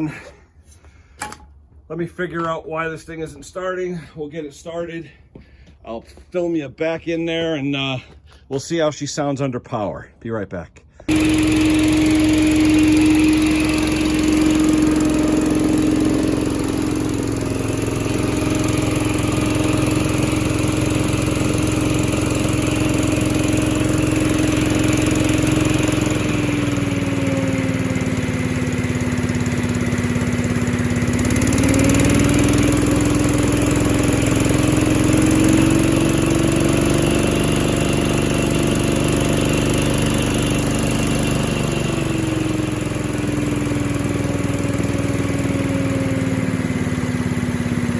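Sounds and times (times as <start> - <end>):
leaf blower engine humming: 11.1 - 47.9.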